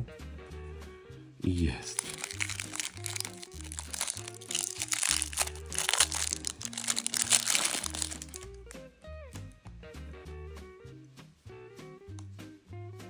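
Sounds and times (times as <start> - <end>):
packaging crinkling: 1.9 - 8.6.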